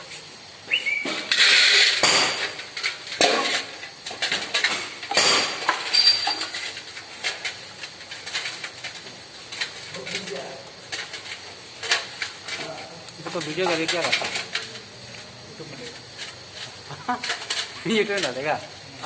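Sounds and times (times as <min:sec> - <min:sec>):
short high whistle-like tone: 0:00.7 - 0:01.1
metal clinks and knocks: 0:01.3 - 0:14.8.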